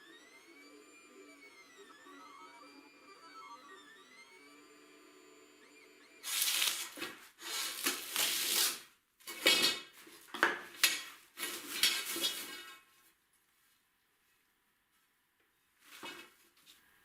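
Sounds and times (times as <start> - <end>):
metal scraping and clattering: 10.9 - 12.9.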